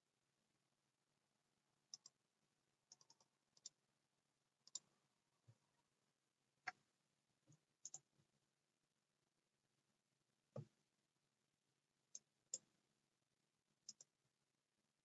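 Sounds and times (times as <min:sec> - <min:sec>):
faint computer mouse clicks: 0:02.9 - 0:03.8, 0:13.9 - 0:14.1.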